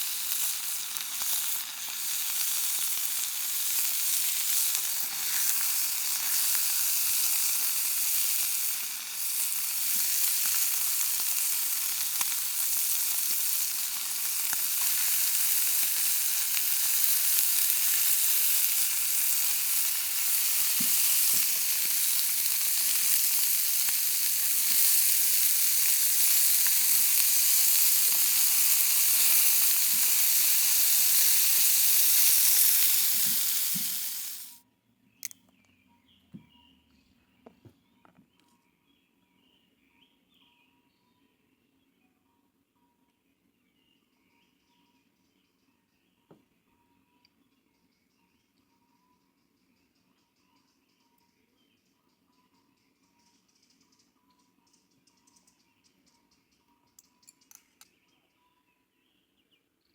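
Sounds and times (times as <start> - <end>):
food sizzling in a pan: 0.0 - 34.6.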